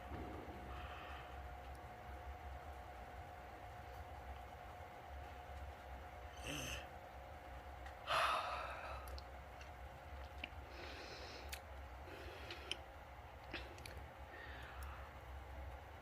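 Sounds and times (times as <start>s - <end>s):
breathy yawn: 8.1s - 9.1s
soft breath: 8.1s - 9.2s, 10.6s - 12.8s, 13.5s - 15.4s.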